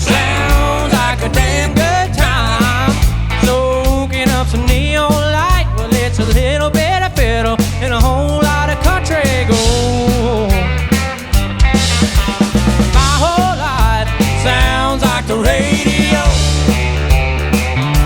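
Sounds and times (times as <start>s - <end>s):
bending lead melody: 0.0s - 4.2s, 8.9s - 18.0s
bass: 0.0s - 18.0s
drums: 0.0s - 18.0s.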